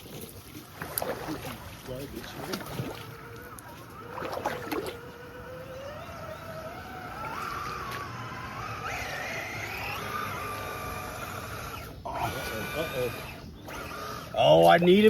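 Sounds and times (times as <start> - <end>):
electric motor whining: 3.0 - 15.0.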